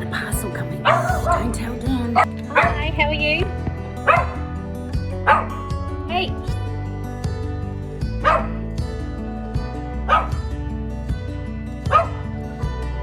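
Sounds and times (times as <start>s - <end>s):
background music: 0.0s - 13.0s
dog barking: 8.2s - 8.5s, 10.1s - 10.3s, 11.9s - 12.2s.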